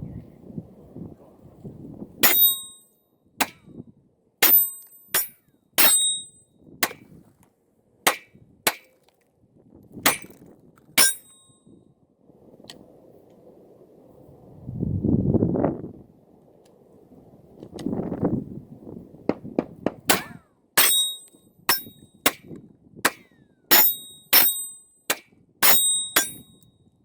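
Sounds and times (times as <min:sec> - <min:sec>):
bullets ringing on steel target: 0:02.2 - 0:03.6, 0:04.4 - 0:07.0, 0:11.0 - 0:11.6, 0:20.1 - 0:22.5, 0:23.1 - 0:26.7.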